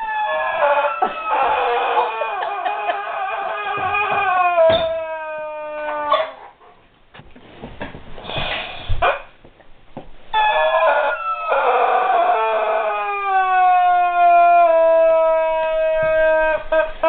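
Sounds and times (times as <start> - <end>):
dog whining: 0.0 - 6.6, 10.3 - 17.0.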